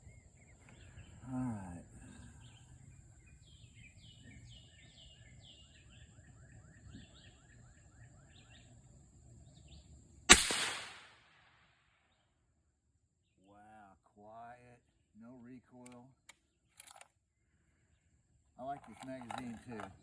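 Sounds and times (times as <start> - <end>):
birds chirping: 0.0 - 10.6
suppressed rifle shot: 10.3 - 11.6.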